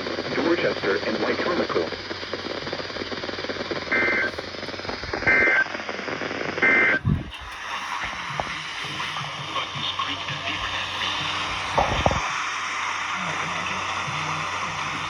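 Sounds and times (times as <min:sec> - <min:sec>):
radio hiss: 0:00.0 - 0:15.0
two-tone data buzz: 0:00.0 - 0:15.0.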